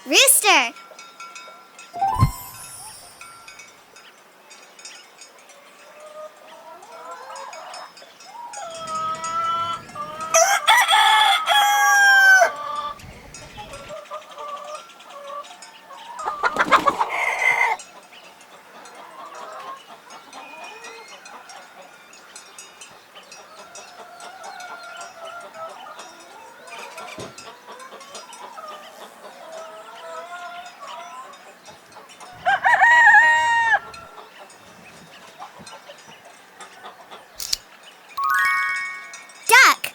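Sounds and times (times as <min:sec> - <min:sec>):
rooster crowing: 0:32.4 - 0:33.9.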